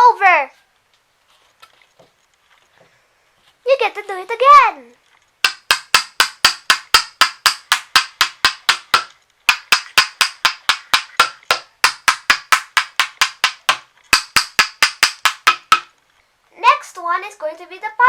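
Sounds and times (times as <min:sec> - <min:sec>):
toy hammer knocking wooden pegs: 0:05.4 - 0:16.0.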